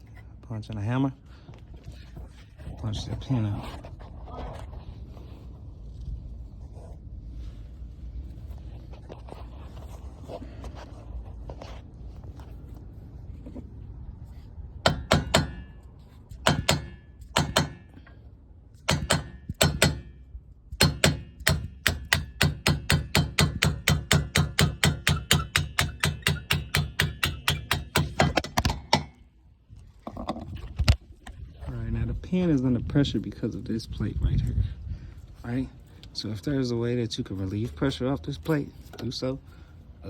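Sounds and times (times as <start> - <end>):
hammer striking steel punch: 14.8 - 15.8, 16.4 - 18.0, 18.9 - 20.2, 20.8 - 29.2.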